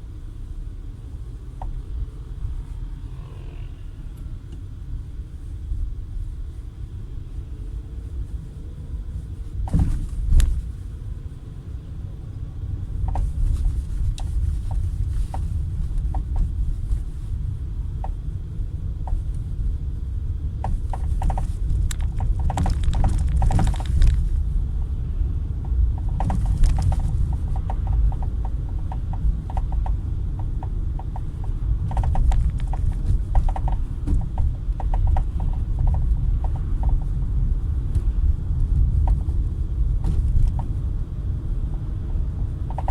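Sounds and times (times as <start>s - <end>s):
car driving low rumble: 0.0s - 42.9s
short knocks from car front: 9.6s - 10.6s.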